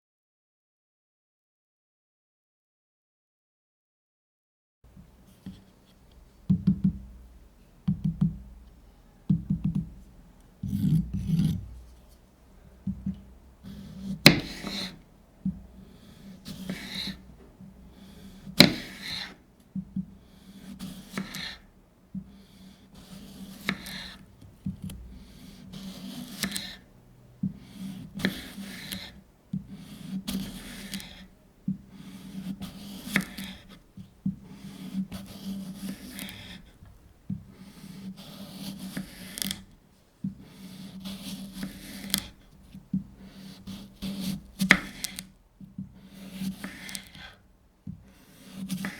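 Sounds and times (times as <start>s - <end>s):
knife knocking on cutting board: 9.3s - 10.0s, 12.8s - 13.4s
knife slicing cucumber: 9.3s - 12.2s, 12.9s - 17.3s, 17.9s - 47.4s, 48.1s - 48.9s.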